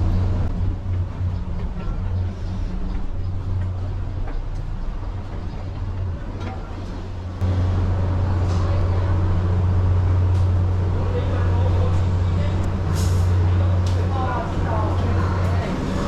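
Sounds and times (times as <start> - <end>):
low engine drone: 0.0 - 16.0
road or water noise hum: 0.0 - 16.0.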